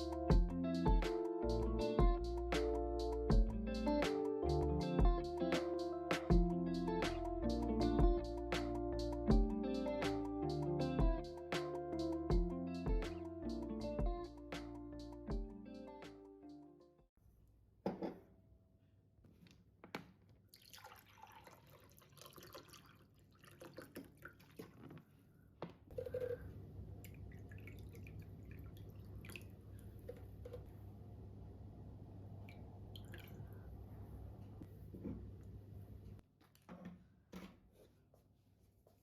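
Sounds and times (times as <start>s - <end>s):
dripping and trickling water: 20.5s - 24.9s, 27.0s - 30.1s, 32.4s - 33.6s.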